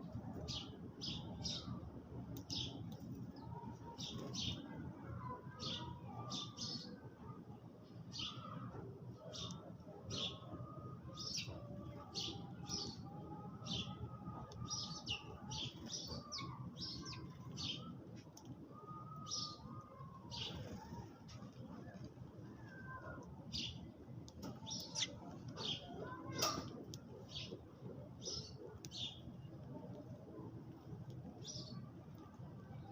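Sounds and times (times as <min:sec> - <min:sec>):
low background noise: 0:00.0 - 0:32.9
sparrows chirping: 0:00.4 - 0:04.8, 0:05.5 - 0:07.0, 0:08.0 - 0:18.0, 0:18.7 - 0:21.0, 0:22.6 - 0:23.9, 0:24.5 - 0:29.4, 0:31.4 - 0:31.9.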